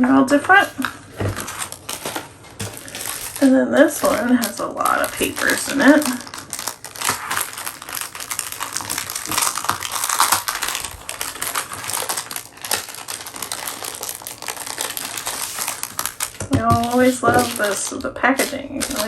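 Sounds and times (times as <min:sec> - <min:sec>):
paper rustling and crackling: 0:00.4 - 0:19.0.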